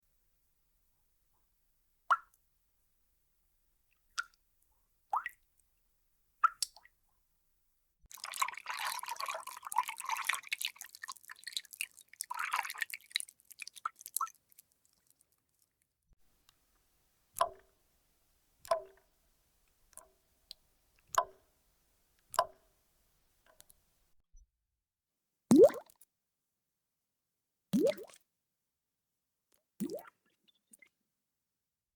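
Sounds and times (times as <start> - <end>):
water drops plopping: 8.1 - 14.6, 25.5 - 25.9, 27.8 - 28.2, 29.8 - 30.1
ringing water drips: 8.1 - 15.2.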